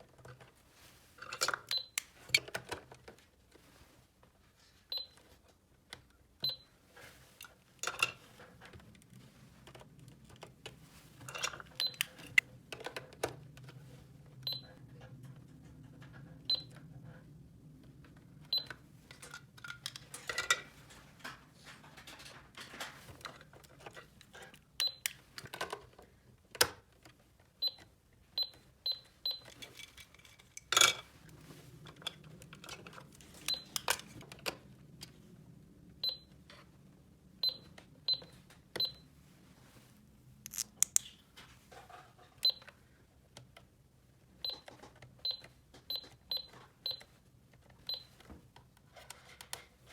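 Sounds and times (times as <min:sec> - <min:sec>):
plastic toy pieces clicking: 0:40.5 - 0:41.2.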